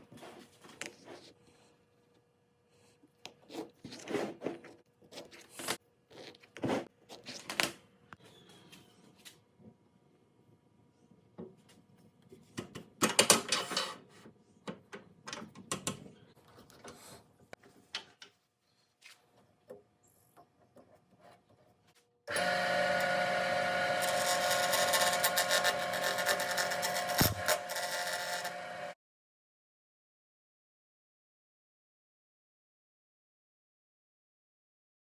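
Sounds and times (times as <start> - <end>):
wood lathe motor whirring: 22.3 - 29.0.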